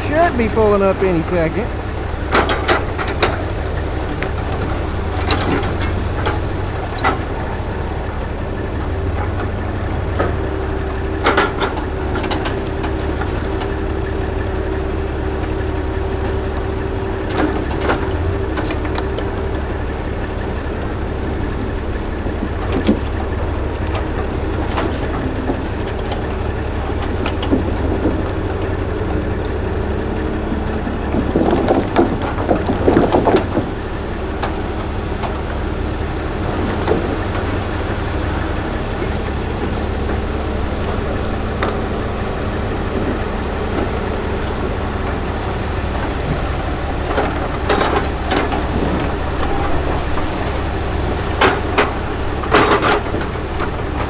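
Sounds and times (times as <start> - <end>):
diesel engine running: 0.0 - 54.0
logs clunking and dropping: 17.3 - 53.7.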